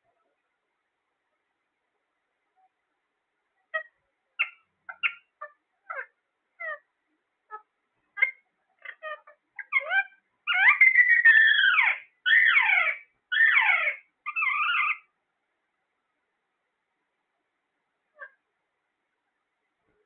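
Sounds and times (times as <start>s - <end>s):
parrot chirps and calls: 3.7s - 6.9s, 7.5s - 15.2s, 18.1s - 18.4s.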